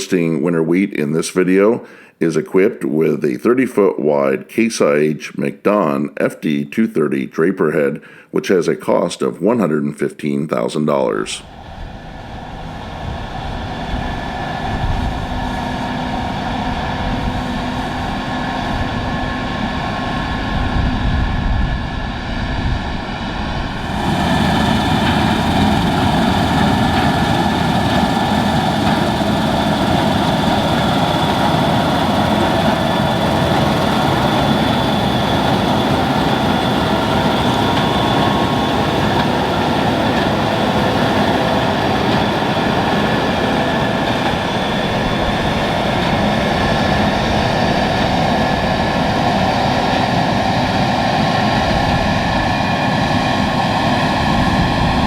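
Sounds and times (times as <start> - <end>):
combine harvester engine drone: 11.4 - 55.0.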